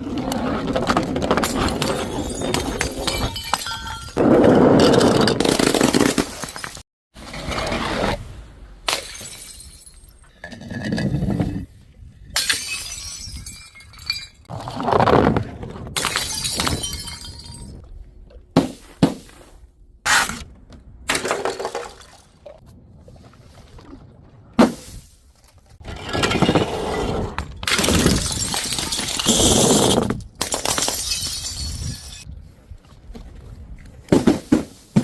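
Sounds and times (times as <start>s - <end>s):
glass bottles smashing: 1.4s - 4.2s, 8.9s - 10.2s, 12.4s - 14.5s, 16.0s - 17.8s, 27.7s - 32.2s.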